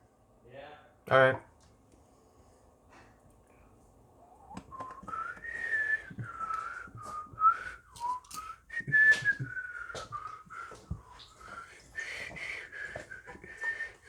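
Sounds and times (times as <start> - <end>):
person whistling a tune: 4.5 - 14.0
small clicks and taps: 4.6 - 5.4.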